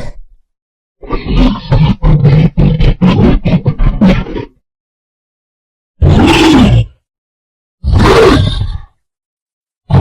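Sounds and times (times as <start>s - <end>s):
cartoon bear roar: 6.0s - 7.0s, 7.8s - 9.0s.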